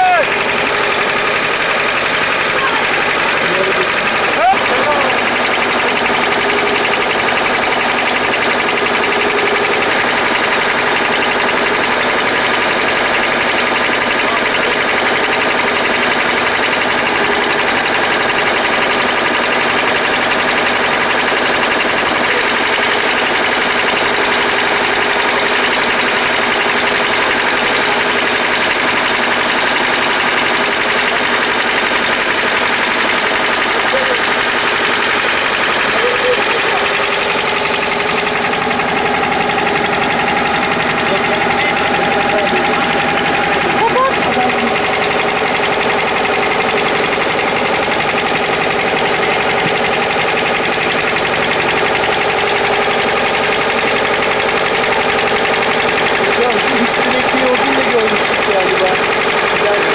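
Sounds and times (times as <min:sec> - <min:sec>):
engine droning steadily: 0:00.0 - 0:59.9.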